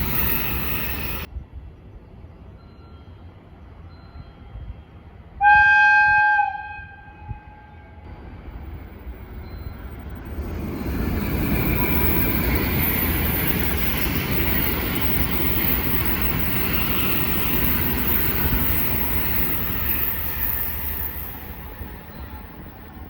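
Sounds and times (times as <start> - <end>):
rail hiss: 0.0 - 1.3, 8.1 - 23.0
freight train rumble: 0.0 - 23.0
locomotive whistle blast: 5.4 - 7.9.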